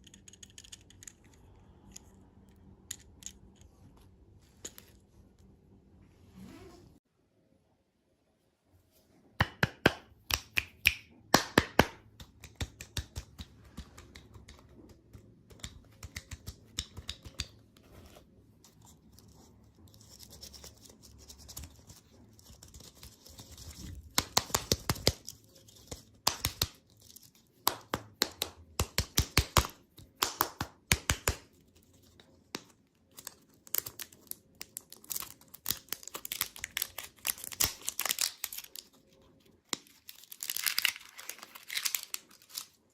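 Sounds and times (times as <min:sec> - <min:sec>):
candy wrappers crinkling and tearing: 0:33.0 - 0:42.9.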